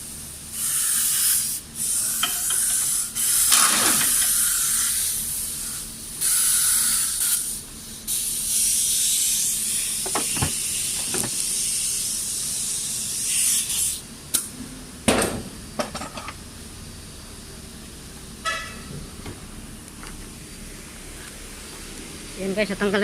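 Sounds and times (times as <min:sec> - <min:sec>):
hissing spray: 0:00.1 - 0:14.0.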